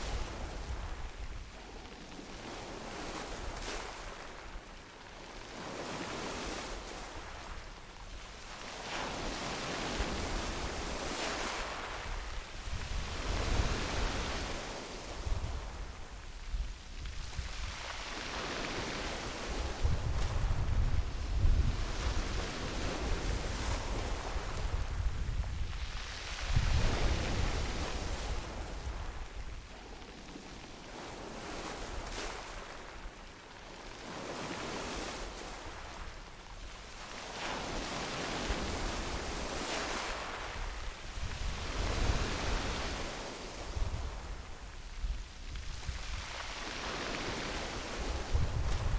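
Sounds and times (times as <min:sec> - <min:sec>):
waves washing over pebble beach: 0:17.1 - 0:33.1, 0:36.9 - 0:44.9, 0:45.7 - 0:48.9.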